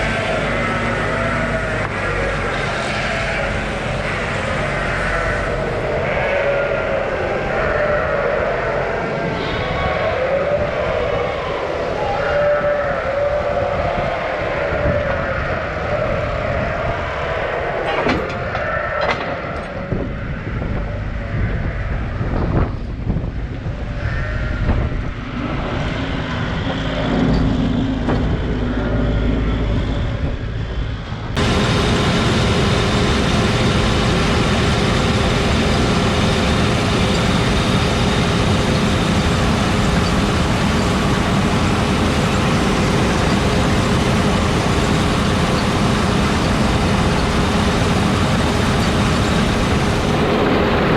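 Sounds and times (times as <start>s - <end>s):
diesel machinery engine: 0.0s - 10.7s, 25.4s - 50.9s
constant engine whine: 0.0s - 50.9s.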